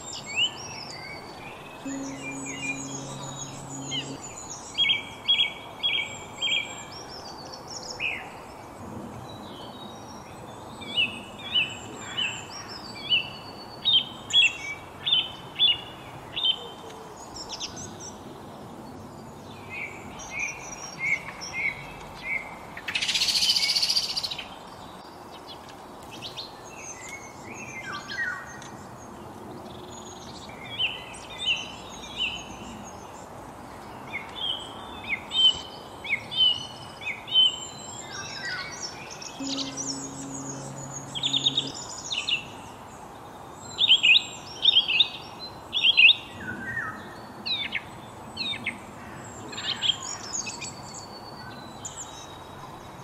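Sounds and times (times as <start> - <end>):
birds singing and chirping: 0.0 - 8.2, 34.0 - 42.9.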